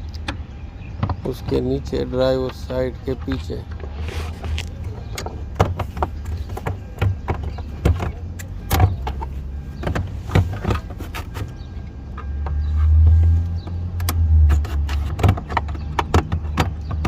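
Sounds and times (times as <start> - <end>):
tools clicking and knocking: 13.6 - 17.0.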